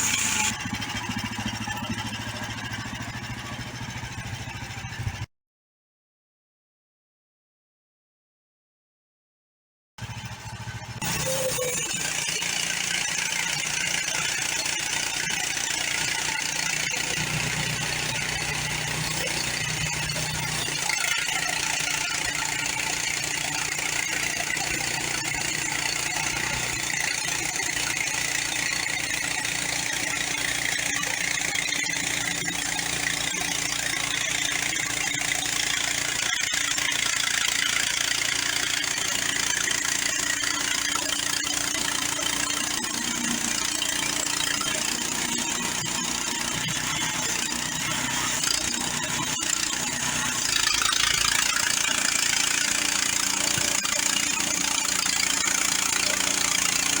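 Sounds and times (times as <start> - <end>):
band blade cutting log: 0.0 - 0.6
gasoline engine running: 0.0 - 5.3, 10.0 - 57.0.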